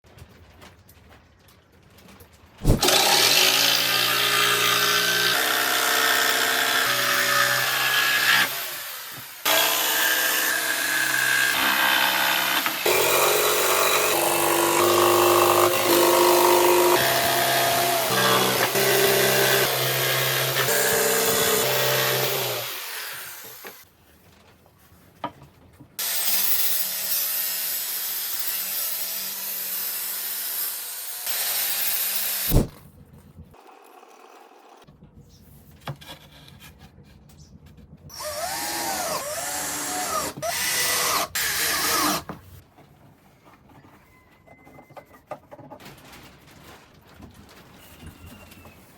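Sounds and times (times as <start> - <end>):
power tools cutting and sawing: 2.7 - 23.8, 26.0 - 32.7, 38.1 - 42.3.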